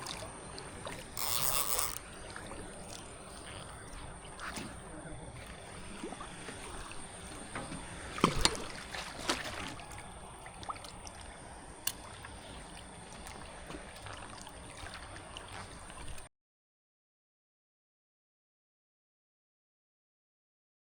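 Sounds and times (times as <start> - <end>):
sharp splashes: 0.0 - 16.3
water sloshing and splashing: 0.0 - 16.3.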